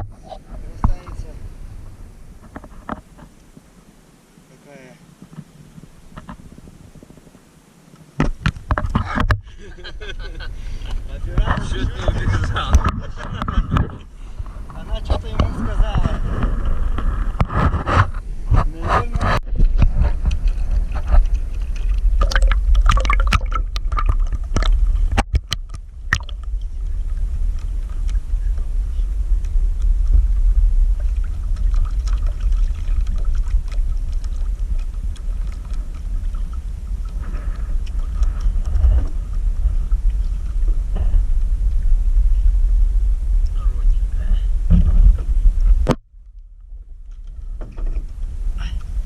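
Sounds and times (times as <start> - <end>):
wind rumble on microphone: 0.0 - 49.0.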